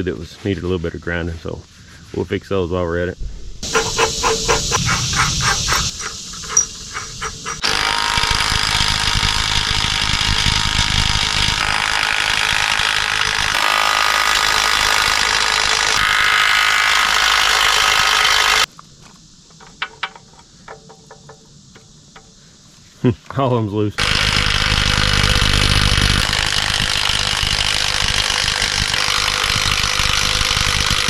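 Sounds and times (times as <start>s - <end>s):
angle grinder grinding steel: 3.6s - 18.7s, 24.0s - 31.0s.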